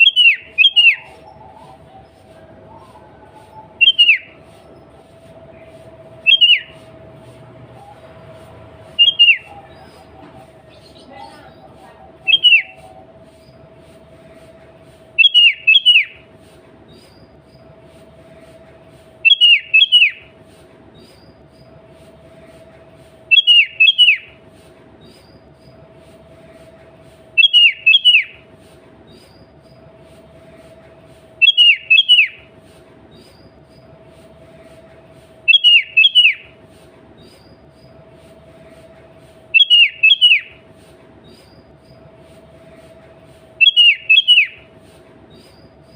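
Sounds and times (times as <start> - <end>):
bird calling: 0.0 - 13.6, 15.2 - 16.3, 19.2 - 20.3, 23.3 - 24.4, 27.4 - 28.5, 31.4 - 32.5, 35.5 - 36.6, 39.5 - 40.7, 43.6 - 44.8.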